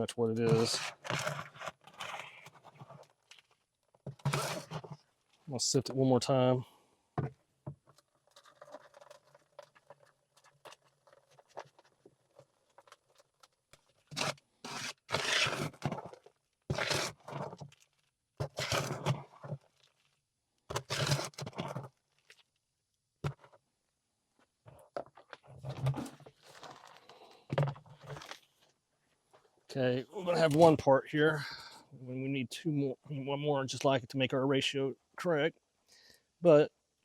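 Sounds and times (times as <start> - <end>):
ash scraping through a sifter: 4.2 - 4.8, 14.1 - 15.8, 16.7 - 17.5.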